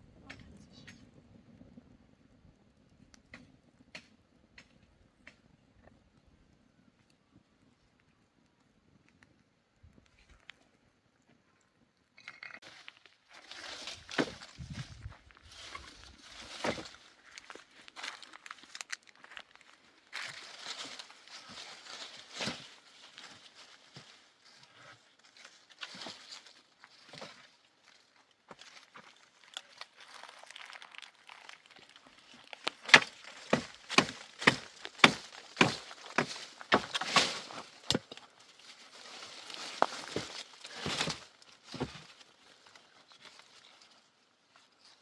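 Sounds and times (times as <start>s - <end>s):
rustling: 12.3s - 45.0s.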